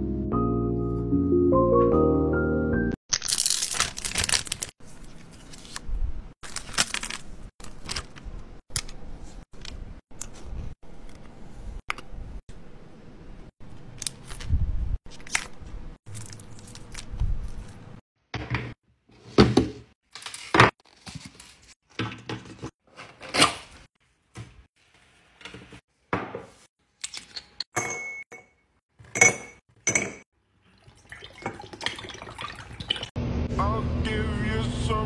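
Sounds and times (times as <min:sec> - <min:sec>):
packaging being handled: 0:03.1 - 0:09.0.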